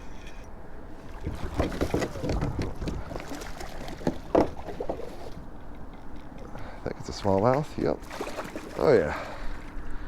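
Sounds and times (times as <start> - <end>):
water splashing against boat: 0.9 - 10.0.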